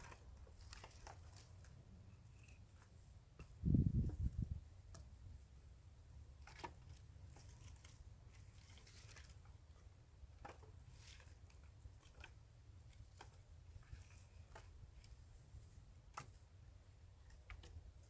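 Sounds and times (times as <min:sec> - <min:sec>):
faint clicks and crackles: 0:00.0 - 0:03.6.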